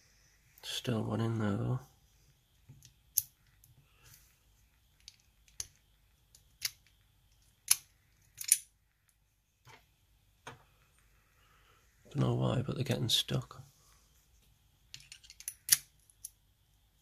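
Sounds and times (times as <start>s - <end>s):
metal lock parts clicking: 5.0s - 6.9s, 7.6s - 8.7s, 14.9s - 16.4s.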